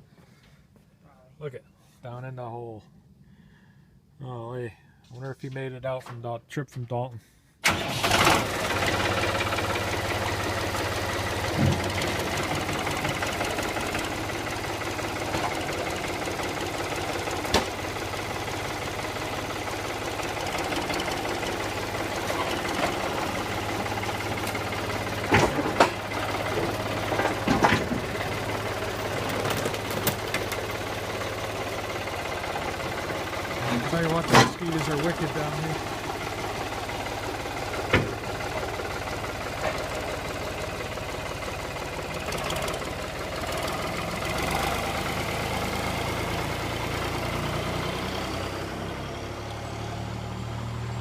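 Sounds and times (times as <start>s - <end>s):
tractor engine idling: 7.6s - 51.0s.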